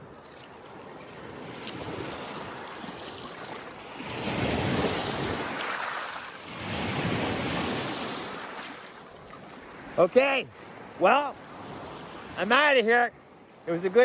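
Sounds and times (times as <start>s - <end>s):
lake waves washing onto shore: 0.0s - 14.0s
wind on microphone: 3.9s - 5.6s, 6.4s - 8.6s.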